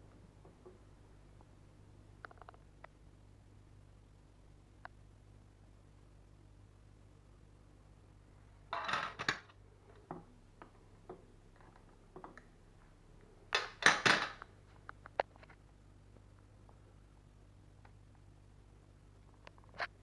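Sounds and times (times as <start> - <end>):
hard objects clattering: 8.7 - 9.5.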